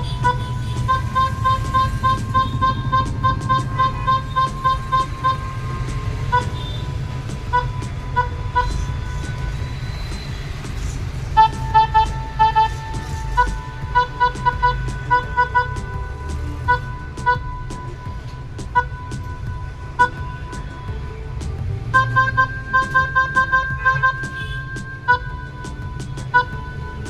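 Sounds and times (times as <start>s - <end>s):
electronic keyboard notes: 11.3s - 27.0s.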